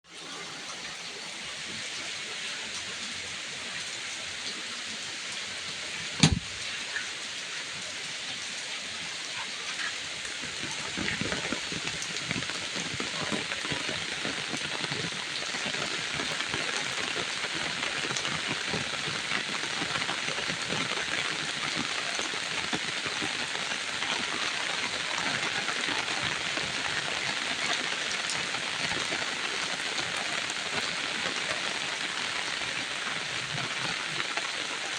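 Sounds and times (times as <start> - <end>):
steady rain falling: 0.0 - 34.9
sharp knock: 6.2 - 6.5.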